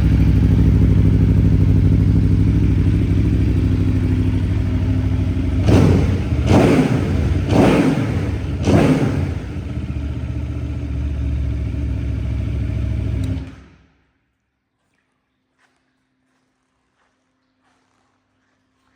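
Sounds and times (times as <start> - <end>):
motorcycle engine idling and revving: 0.0 - 13.6.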